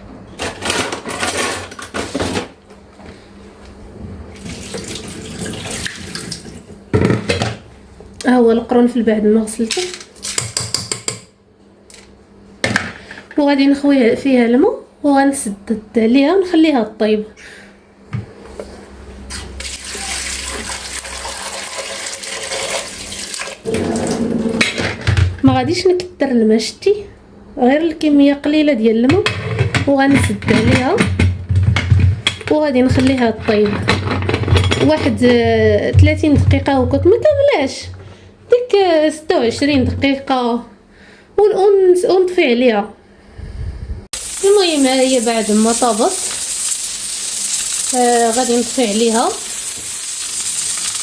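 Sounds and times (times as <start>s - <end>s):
tap water running and splashing: 4.4s - 6.7s, 19.6s - 23.7s, 44.2s - 51.0s.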